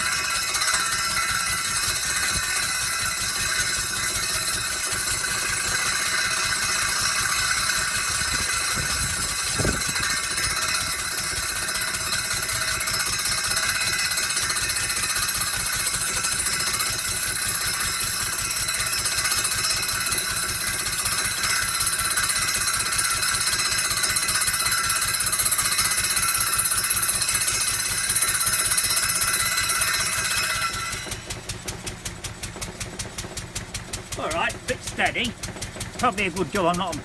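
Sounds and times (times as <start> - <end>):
stationary engine running: 17.1 - 37.0
circular saw blade whining: 26.3 - 31.4.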